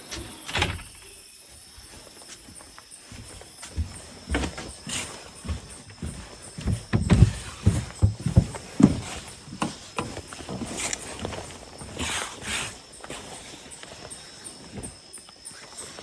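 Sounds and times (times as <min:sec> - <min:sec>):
footsteps on hard floor: 0:01.5 - 0:12.0.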